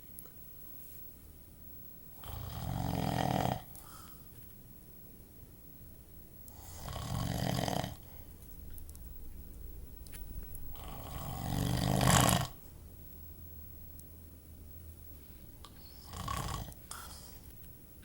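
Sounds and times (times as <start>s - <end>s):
quiet breathing: 2.1s - 4.7s, 5.9s - 18.0s
person snoring: 2.2s - 4.1s, 6.5s - 8.3s, 10.7s - 12.6s, 15.6s - 17.4s.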